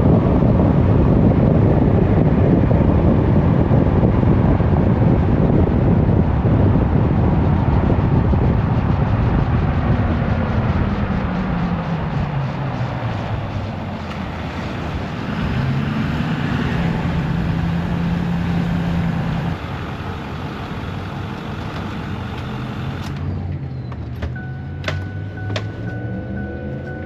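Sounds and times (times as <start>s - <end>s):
truck driving on road: 0.0s - 27.0s
steady high tone: 24.4s - 27.0s.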